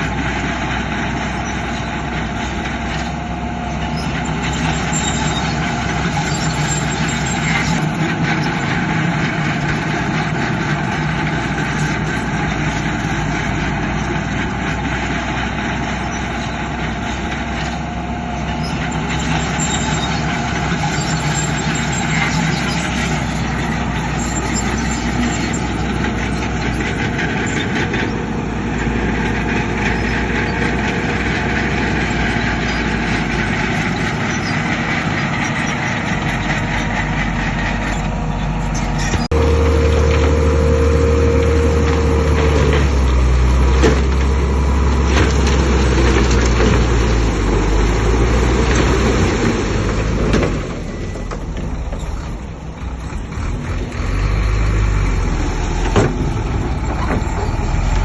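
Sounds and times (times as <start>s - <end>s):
heavy machinery diesel engines: 0.0s - 58.0s.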